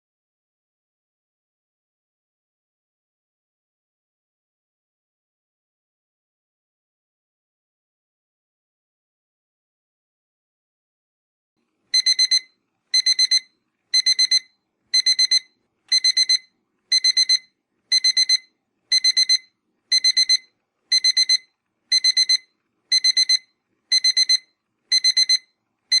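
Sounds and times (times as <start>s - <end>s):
digital alarm clock beeping: 11.9s - 26.0s.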